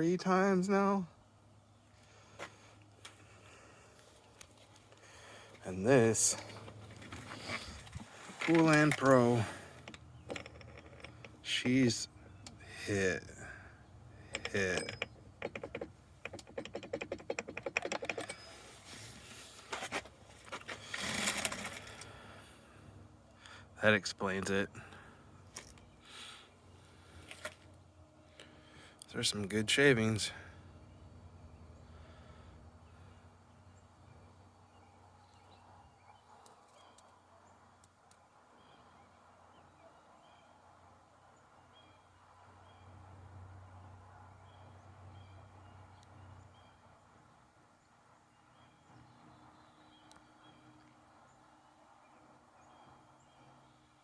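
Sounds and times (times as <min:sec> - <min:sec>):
scraping rattle of chainsaw parts: 0:05.7 - 0:13.6, 0:14.2 - 0:22.3
rapid ratcheting clicks: 0:14.3 - 0:18.5.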